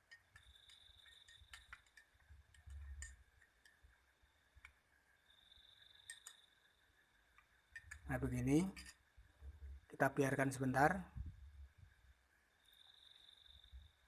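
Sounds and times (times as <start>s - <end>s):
faint high-pitched whine: 0.0s - 14.0s
faint clicks: 6.0s - 6.5s.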